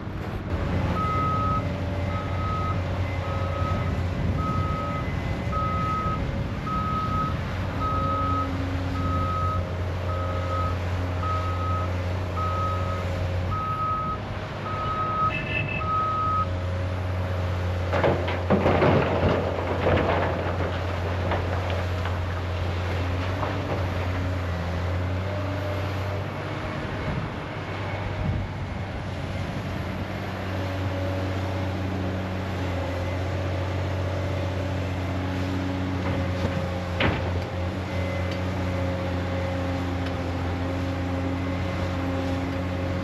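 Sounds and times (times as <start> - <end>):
diesel engine running: 0.0 - 43.0
rattling crunching rock: 17.9 - 22.4.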